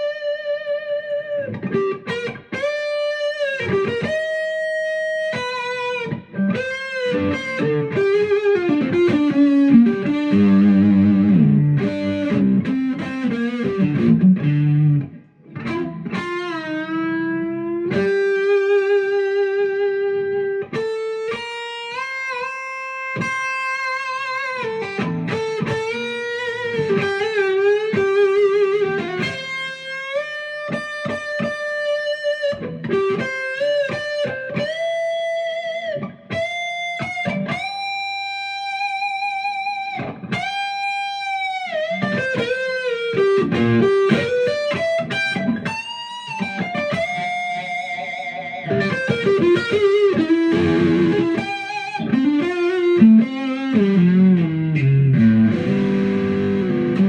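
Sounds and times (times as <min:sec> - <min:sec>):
electric guitar melody: 0:00.0 - 0:57.0.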